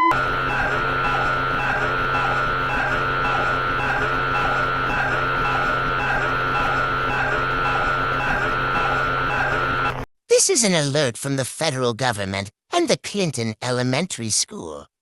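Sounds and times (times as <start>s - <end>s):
high swelling synth tone: 0.0s - 10.0s
low electronic hum: 0.0s - 10.0s.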